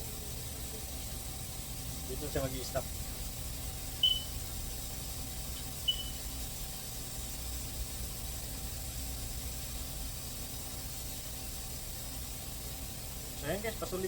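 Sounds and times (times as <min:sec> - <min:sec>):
coolant filling machine hissing: 0:00.0 - 0:14.0
short high chirp: 0:04.0 - 0:04.3, 0:05.9 - 0:06.2.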